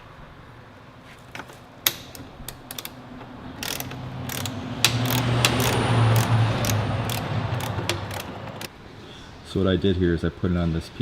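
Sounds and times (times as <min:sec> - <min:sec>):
ratcheting socket wrench clicking: 0:01.9 - 0:03.0, 0:03.6 - 0:08.7.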